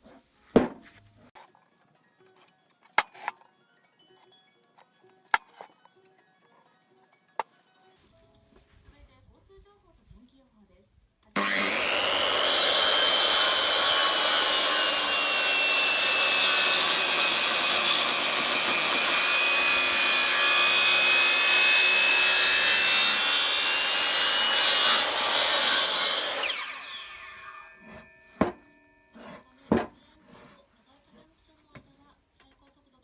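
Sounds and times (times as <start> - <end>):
lathe tool scraping wood: 11.4 - 28.4.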